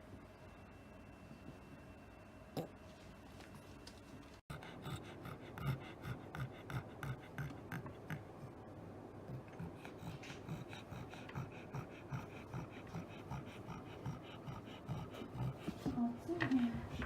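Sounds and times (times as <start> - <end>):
dog snoring: 4.5 - 8.6, 9.3 - 17.0.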